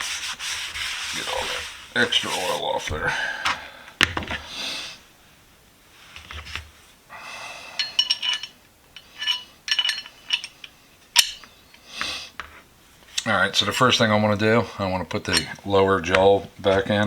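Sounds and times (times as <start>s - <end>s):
steel wrench parts clinking: 7.8s - 11.5s, 15.2s - 15.6s.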